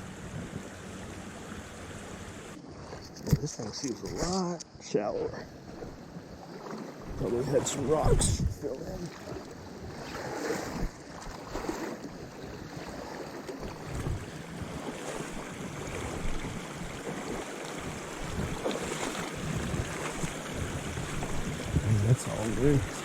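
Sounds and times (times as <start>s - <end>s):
wind buffeting microphone: 0.0s - 2.6s, 7.0s - 23.0s
stream flowing: 0.0s - 23.0s.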